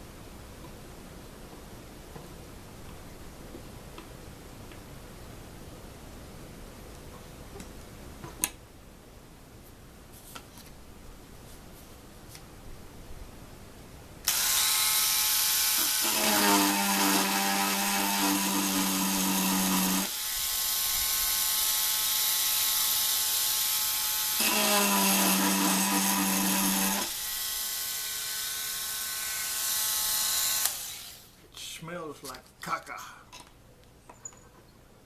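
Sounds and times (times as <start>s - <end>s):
small power tool grinding: 14.3s - 31.3s.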